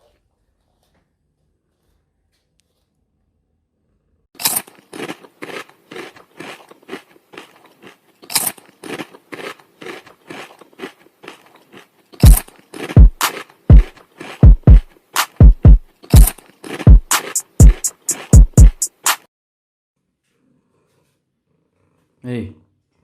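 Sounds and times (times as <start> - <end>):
cat chewing crunchy food: 4.4 - 15.4, 16.0 - 18.4
bass drum booms in music: 14.4 - 14.8, 15.4 - 16.3, 16.9 - 17.8, 18.4 - 18.8.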